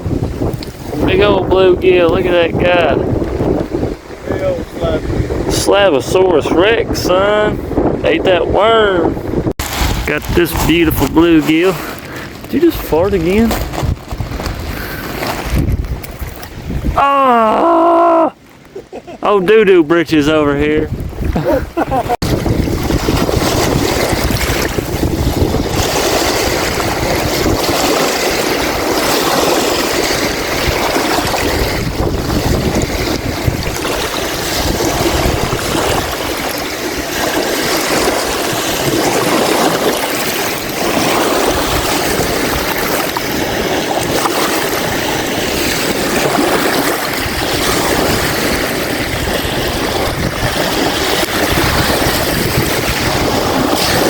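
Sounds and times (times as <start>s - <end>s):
wind buffeting microphone: 0.0s - 17.2s, 20.0s - 54.0s
waves washing on shore: 0.0s - 54.0s.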